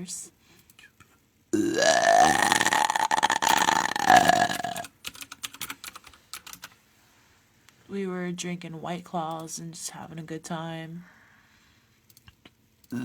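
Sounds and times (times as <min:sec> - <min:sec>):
long rattly burp: 0:01.6 - 0:04.9.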